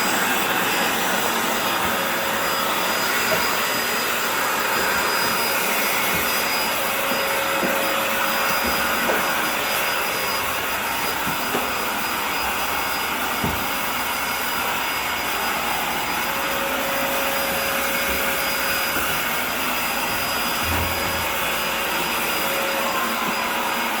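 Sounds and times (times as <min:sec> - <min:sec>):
fan blowing air: 0:00.0 - 0:24.0.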